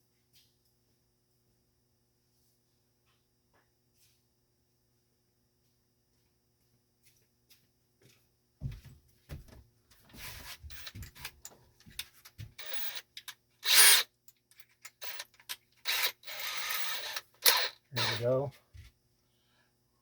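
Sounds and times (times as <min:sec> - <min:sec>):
tools knocking and clicking: 0:10.7 - 0:18.3
power drill bursts: 0:12.6 - 0:13.0, 0:13.6 - 0:14.0, 0:15.0 - 0:15.3, 0:15.9 - 0:18.3.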